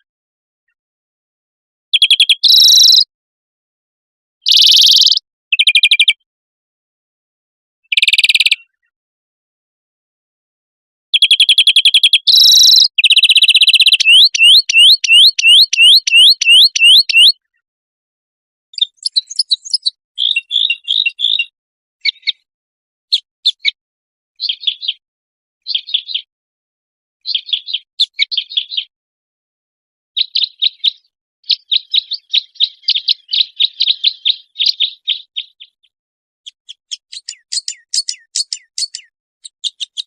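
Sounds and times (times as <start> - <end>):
songbird trills and whistles: 2.0 - 3.1, 4.4 - 6.2, 7.9 - 8.9, 11.2 - 17.5, 18.8 - 22.5, 23.1 - 23.8, 24.4 - 25.0, 25.6 - 26.3, 27.2 - 28.9, 30.2 - 40.0.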